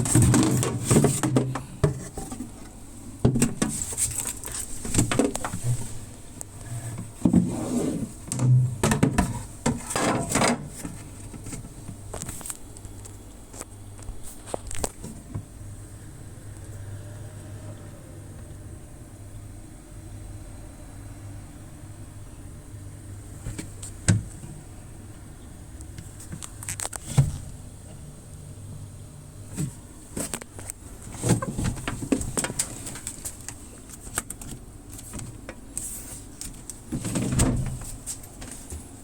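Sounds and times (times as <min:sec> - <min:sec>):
refrigerator doors knocking and clattering: 0:03.2 - 0:03.9, 0:08.3 - 0:10.9, 0:36.9 - 0:37.9.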